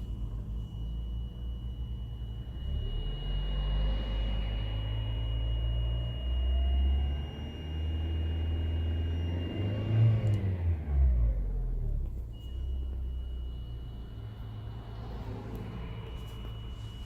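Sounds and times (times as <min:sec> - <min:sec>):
high-pitched gas reducer whistle: 0:00.0 - 0:10.6.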